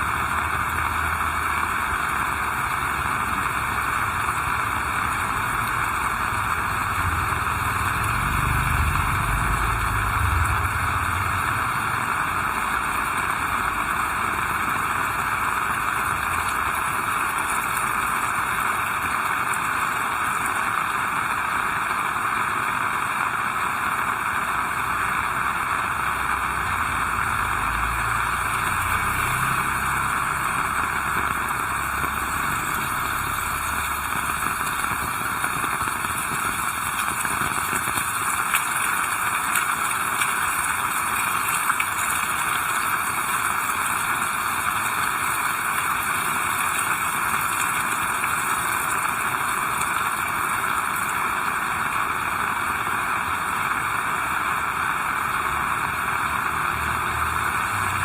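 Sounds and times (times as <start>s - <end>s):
heavy rain falling: 0.0s - 58.0s
low rumble: 6.7s - 12.6s.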